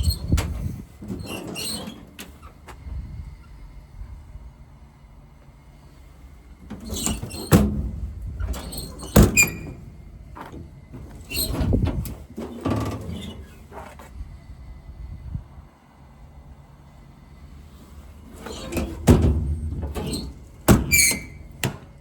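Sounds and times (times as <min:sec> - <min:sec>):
rattling and scraping: 0:17.8 - 0:22.0.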